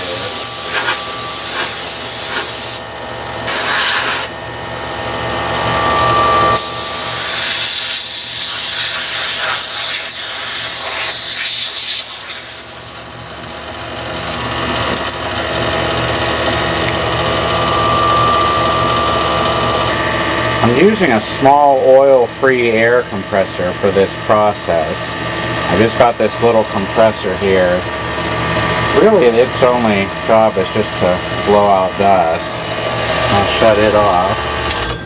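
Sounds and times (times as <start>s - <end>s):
compressed air hissing from nozzle: 0.0s - 2.8s, 3.5s - 4.3s, 6.6s - 13.0s
air compressor running: 0.0s - 35.0s.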